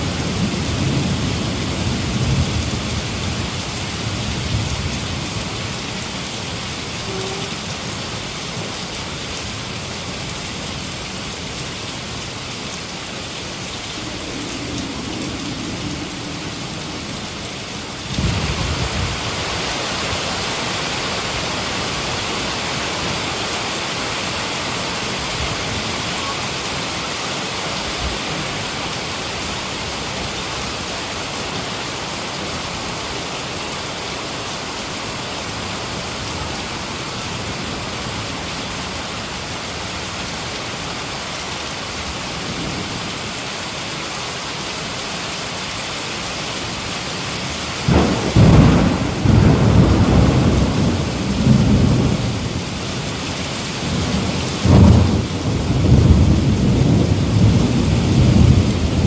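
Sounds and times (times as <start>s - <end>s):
heavy rain falling: 0.0s - 59.0s
thunder rumbling: 13.6s - 19.7s, 47.8s - 53.2s, 53.8s - 59.0s.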